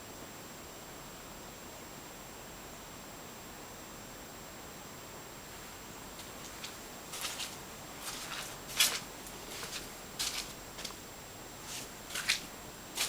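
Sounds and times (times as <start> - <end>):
steady hiss: 5.8 - 13.0
footsteps crunching on debris: 6.2 - 13.0.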